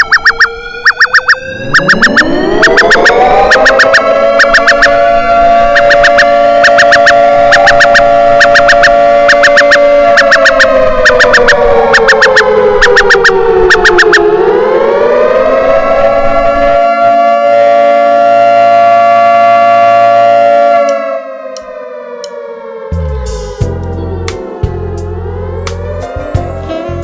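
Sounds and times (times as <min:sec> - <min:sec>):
warning siren wailing: 0:00.0 - 0:24.1, 0:24.7 - 0:26.0
held bass and chord notes: 0:23.0 - 0:27.0.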